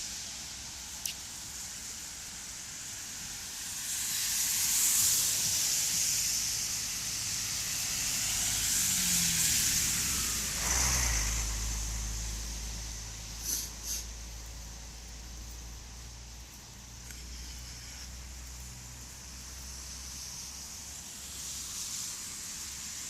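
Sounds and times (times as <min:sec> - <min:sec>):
tyres hissing on wet asphalt: 0:00.0 - 0:23.0
low engine rumble: 0:06.6 - 0:21.2.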